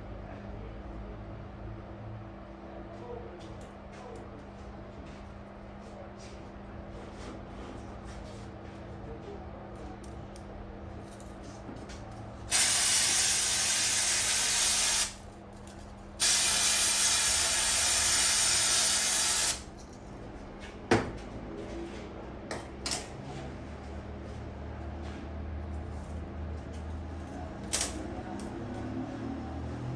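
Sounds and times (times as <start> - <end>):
pressurised spray hissing: 12.5 - 15.2, 16.2 - 19.6.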